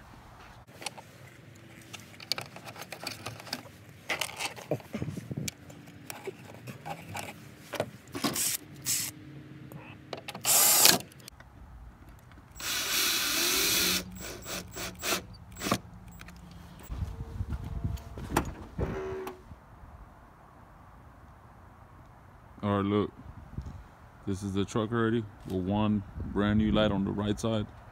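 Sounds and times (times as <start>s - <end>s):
power drill driver running: 10.4s - 11.0s, 12.5s - 15.8s.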